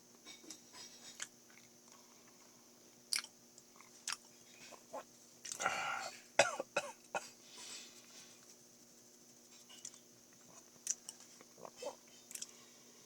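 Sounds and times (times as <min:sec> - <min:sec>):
man chewing with mouth smacks: 0:03.1 - 0:05.6, 0:09.8 - 0:12.6.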